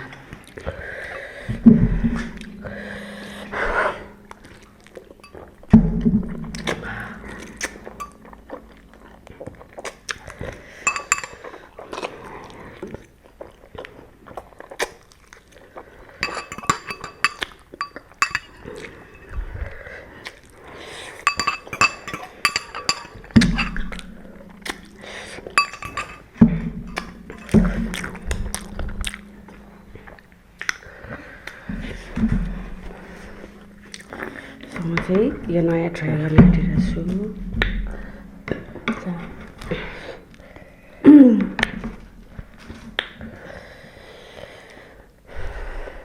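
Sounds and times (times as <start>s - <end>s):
utensils clinking against bowl: 6.6s - 8.2s, 10.8s - 12.1s, 16.2s - 19.5s, 21.1s - 30.0s.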